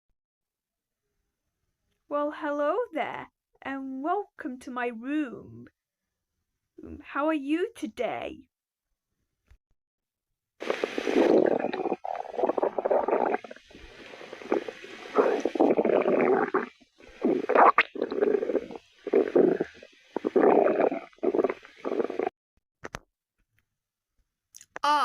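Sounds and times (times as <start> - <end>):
stomach growling: 10.6 - 22.3.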